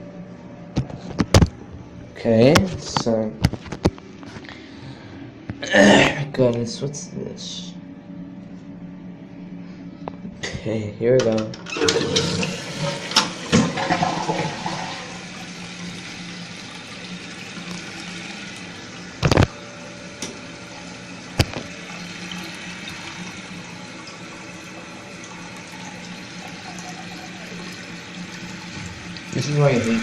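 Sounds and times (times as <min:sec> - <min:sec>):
toilet flushing: 0:11.7 - 0:30.0
toilet tank refilling: 0:11.7 - 0:30.0.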